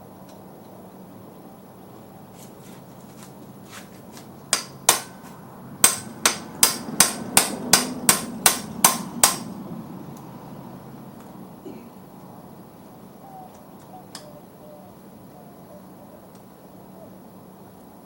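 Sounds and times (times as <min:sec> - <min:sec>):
hammer striking metal screwdriver: 0:04.6 - 0:09.4.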